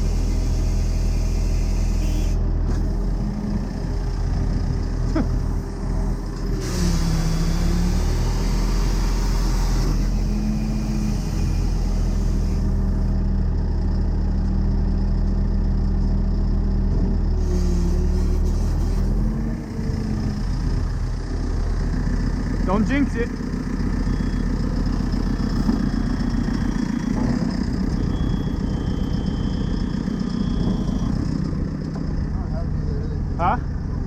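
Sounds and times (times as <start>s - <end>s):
diesel engine running: 0.0s - 34.0s.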